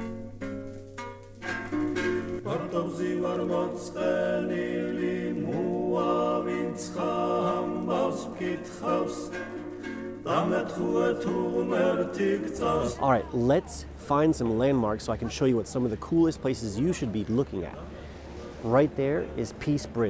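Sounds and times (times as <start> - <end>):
plucked string instrument: 0.0 - 13.1
choir singing held chords: 2.3 - 14.0.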